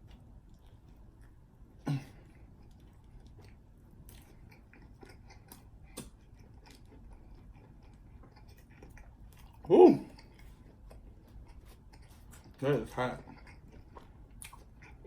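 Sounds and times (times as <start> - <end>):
wet chewing mouth clicks: 2.6 - 12.6, 13.2 - 15.0.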